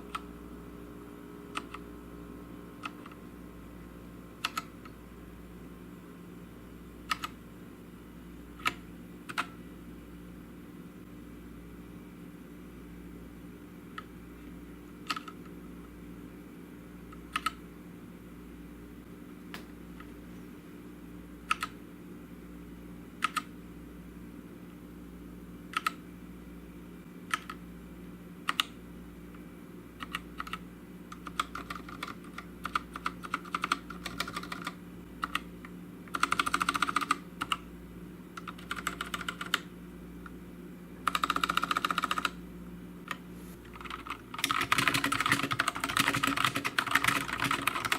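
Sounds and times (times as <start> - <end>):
mechanical keyboard typing: 4.4 - 4.9, 7.1 - 7.4, 8.6 - 9.6, 15.0 - 15.4, 17.2 - 17.6, 21.5 - 21.8, 23.2 - 23.5, 25.7 - 26.0, 27.3 - 27.6, 28.5 - 28.8, 30.0 - 35.5, 36.1 - 37.6, 38.4 - 39.7, 41.0 - 42.4, 43.1 - 47.9.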